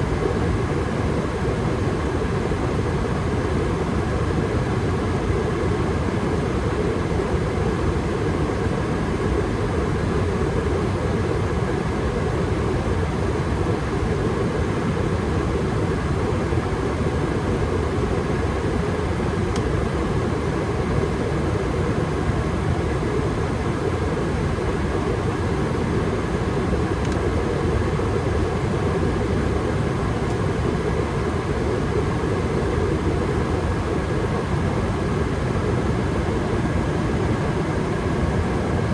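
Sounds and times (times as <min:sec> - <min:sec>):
gas furnace running: 0:09.8 - 0:38.9.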